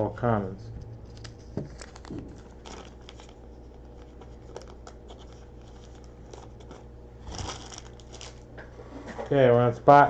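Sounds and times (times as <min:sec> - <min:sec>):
steady low hum: 0:00.0 - 0:10.0
trading cards rustling: 0:01.0 - 0:08.5.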